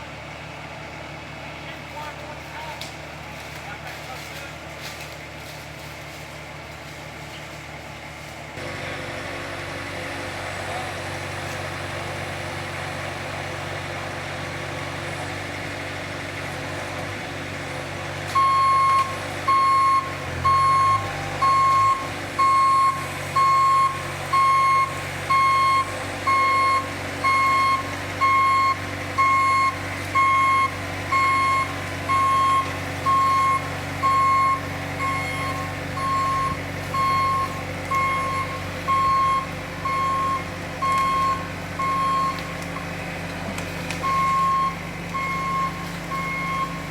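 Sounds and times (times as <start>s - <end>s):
heavy vehicle engine running: 0.0s - 46.9s
backup alarm beeping: 18.4s - 42.6s, 44.0s - 46.9s.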